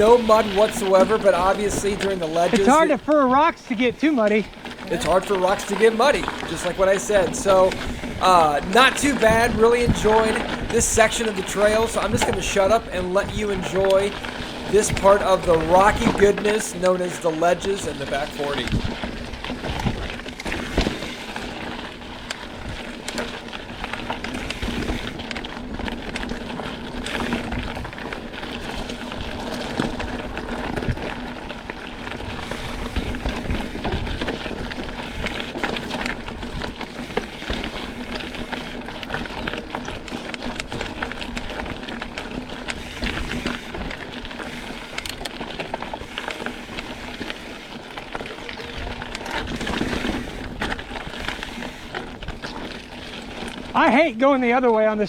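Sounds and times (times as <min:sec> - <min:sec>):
steady rushing noise: 0:00.0 - 0:27.9
bike rattling over rocks: 0:00.0 - 0:55.0.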